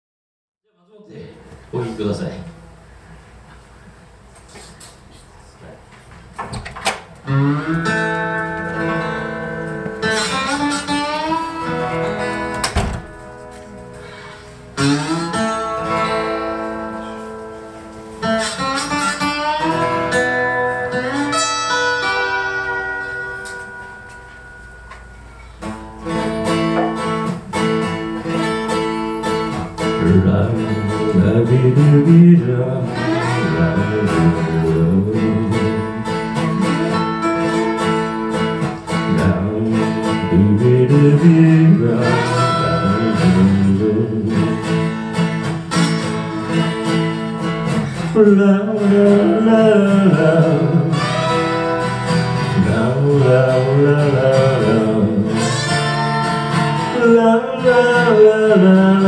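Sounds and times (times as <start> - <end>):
acoustic guitar playing: 6.3 - 59.0
person singing: 29.8 - 44.9, 47.8 - 59.0.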